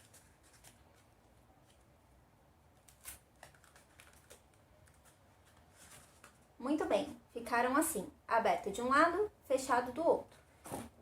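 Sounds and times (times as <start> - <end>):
cardboard tubes and tape rustling: 0.0 - 1.9, 2.8 - 6.6.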